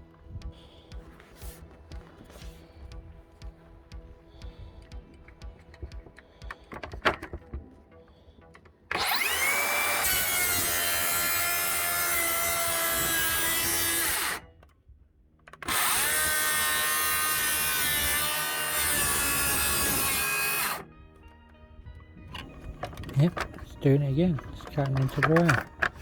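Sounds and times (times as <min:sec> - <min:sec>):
circular saw cutting wood: 0:08.9 - 0:14.6, 0:15.5 - 0:20.9, 0:22.3 - 0:26.0.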